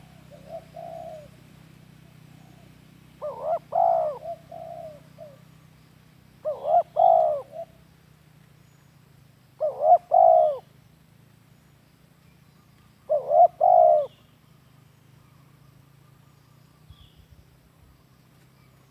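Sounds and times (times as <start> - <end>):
dove cooing: 0.0 - 1.4, 2.0 - 5.6, 6.4 - 7.8, 9.6 - 10.7, 13.0 - 14.2.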